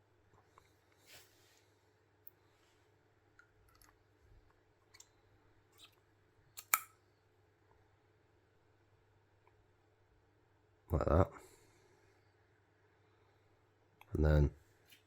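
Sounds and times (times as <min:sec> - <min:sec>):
small parts clicking and clacking: 0:06.6 - 0:07.0.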